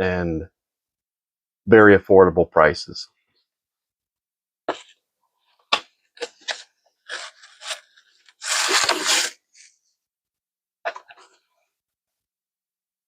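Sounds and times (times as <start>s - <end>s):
packaging rustling: 6.2s - 9.4s
packaging tearing and crinkling: 6.2s - 9.4s.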